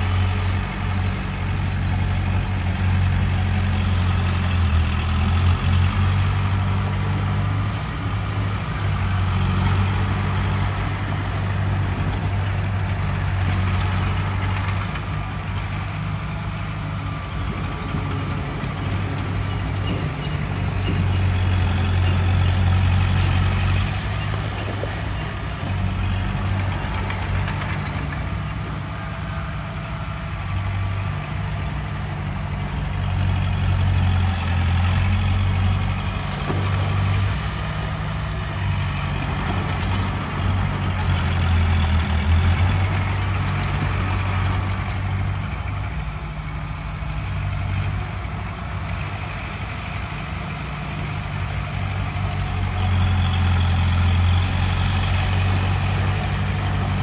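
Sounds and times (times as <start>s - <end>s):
diesel machinery engine drone: 0.0s - 57.0s.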